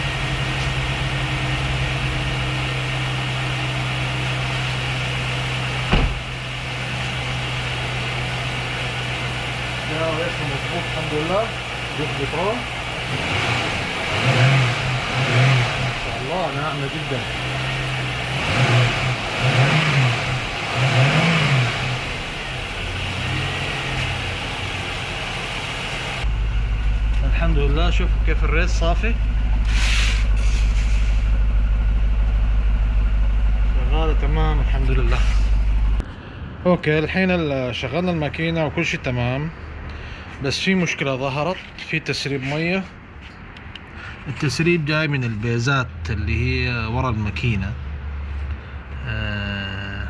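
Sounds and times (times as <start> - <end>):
car engine idling: 0.0 - 36.1
brief thump: 5.9 - 6.3.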